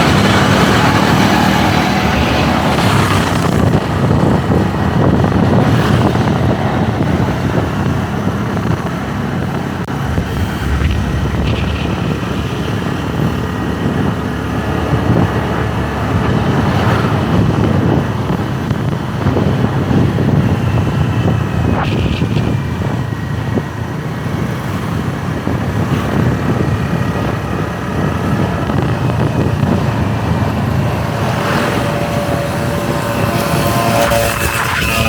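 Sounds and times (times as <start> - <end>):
motorbike running: 0.0 - 35.0
wind buffeting microphone: 0.0 - 35.0
faint pitched sound: 9.9 - 13.7.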